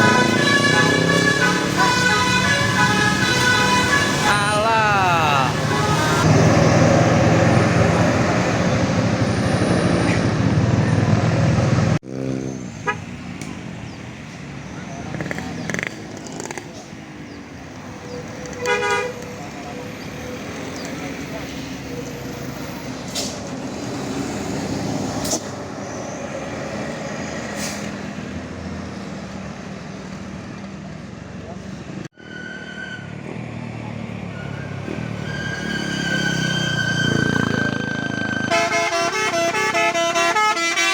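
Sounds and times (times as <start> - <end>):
heavy vehicle passing: 0.0 - 12.4
bus engine drone: 0.0 - 15.9
tyre and road noise: 0.0 - 40.9.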